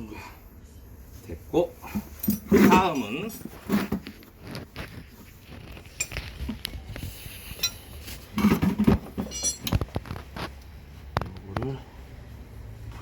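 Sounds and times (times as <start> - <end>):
metal tools clinking: 2.0 - 3.6, 5.9 - 6.2, 7.6 - 7.8, 9.1 - 9.8
metal clatter: 8.4 - 10.0.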